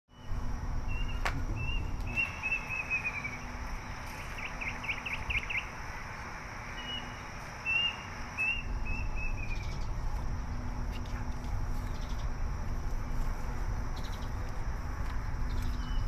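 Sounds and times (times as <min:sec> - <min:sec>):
bird chirping: 0:00.1 - 0:05.8, 0:06.7 - 0:14.6, 0:15.4 - 0:16.0
bird calling downward-slurred notes: 0:00.9 - 0:05.7.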